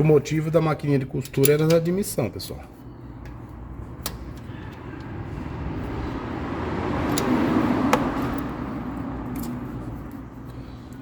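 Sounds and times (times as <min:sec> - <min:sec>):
road vehicle passing: 0:03.4 - 0:11.0.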